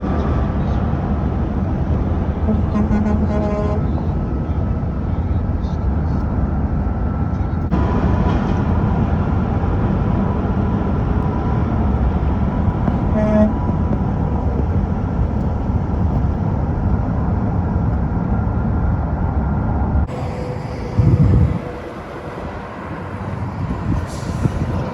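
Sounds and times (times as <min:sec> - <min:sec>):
heavy truck traffic rumble: 0:00.0 - 0:24.9
horn toot: 0:02.5 - 0:04.0, 0:13.0 - 0:13.6.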